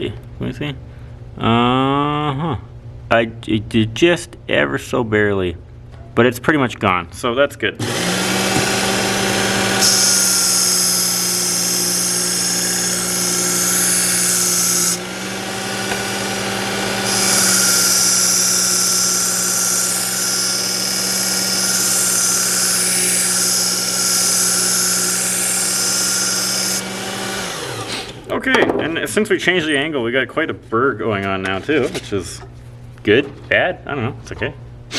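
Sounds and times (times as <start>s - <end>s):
motor hum: 7.8s - 28.3s
belt sharpener grinding knife: 7.9s - 28.1s.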